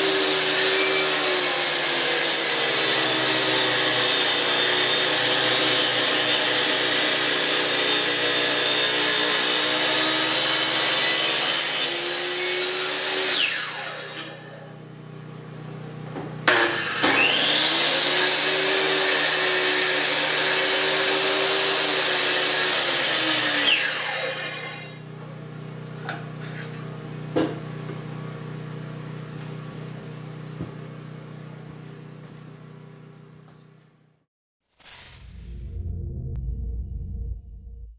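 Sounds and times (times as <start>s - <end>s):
electric saw cutting wood: 0.0s - 14.8s, 16.4s - 25.0s
machine hum: 34.8s - 37.9s.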